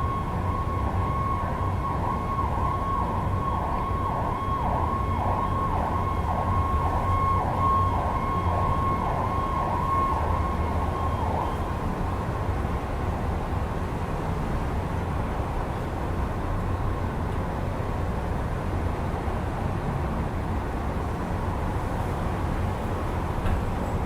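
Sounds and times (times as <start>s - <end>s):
emergency vehicle siren: 0.0s - 13.6s
city traffic rumble: 0.0s - 24.0s.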